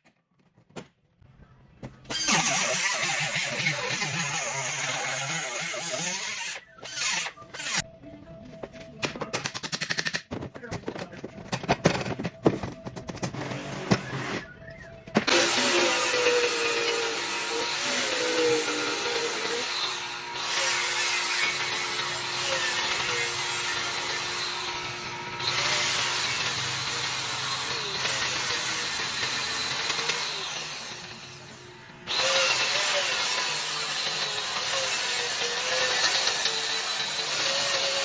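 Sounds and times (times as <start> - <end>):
power tool grinding: 2.1 - 7.8, 13.2 - 14.6, 15.2 - 38.0.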